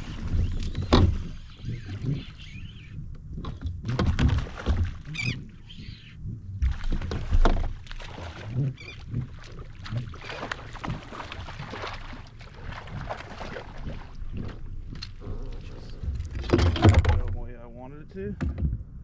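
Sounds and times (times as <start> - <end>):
gear clattering on a kayak: 0.0 - 2.4, 3.1 - 5.8, 6.8 - 8.0, 13.0 - 17.5.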